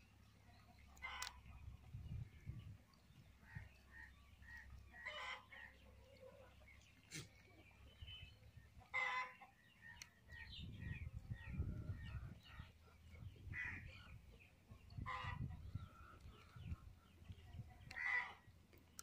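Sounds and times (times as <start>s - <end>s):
chickens clucking: 4.9s - 8.0s, 8.6s - 18.4s.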